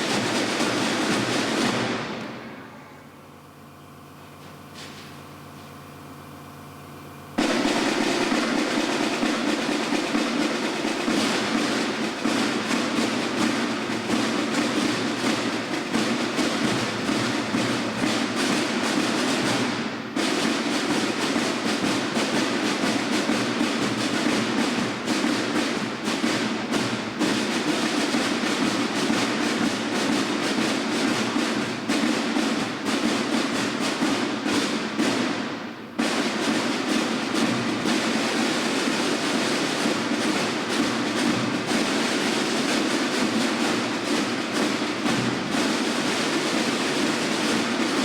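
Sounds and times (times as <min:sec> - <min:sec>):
band playing loudly: 0:00.0 - 0:03.1, 0:07.4 - 0:48.0
drums and percussion beating: 0:00.0 - 0:48.0.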